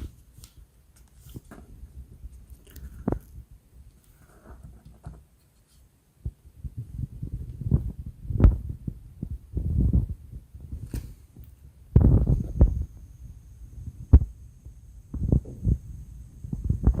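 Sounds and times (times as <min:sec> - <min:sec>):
laptop being handled: 0:00.0 - 0:05.9
faint high whine: 0:08.6 - 0:17.0.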